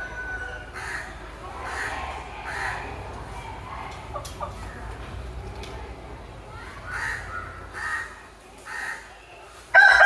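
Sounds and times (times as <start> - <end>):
rooster crowing: 0.0 - 1.1, 9.8 - 10.0
harsh raspy bird calls: 0.6 - 3.0, 6.6 - 9.1.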